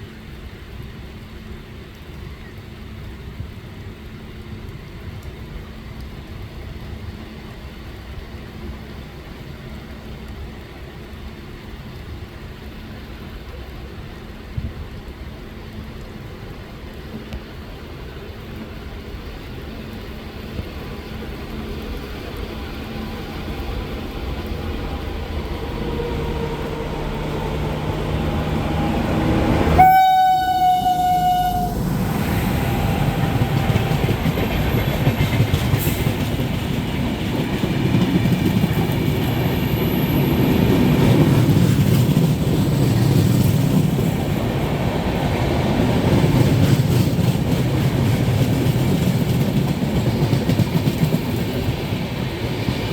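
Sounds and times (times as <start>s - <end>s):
train rumble: 0.0s - 52.9s
train horn blast: 25.7s - 34.0s.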